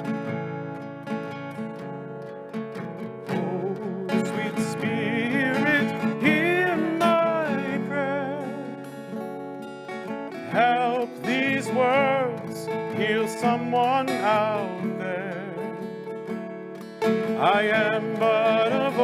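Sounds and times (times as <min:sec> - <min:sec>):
acoustic guitar: 0:00.0 - 0:19.0
person singing with vibrato: 0:03.3 - 0:09.0, 0:10.5 - 0:15.9, 0:17.4 - 0:19.0.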